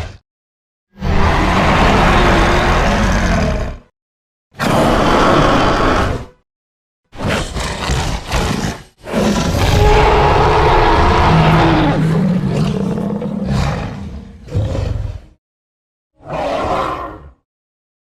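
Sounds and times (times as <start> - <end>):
dinosaur growls and roar: 0.9 - 3.9, 4.6 - 6.3, 7.2 - 15.4, 16.2 - 17.5.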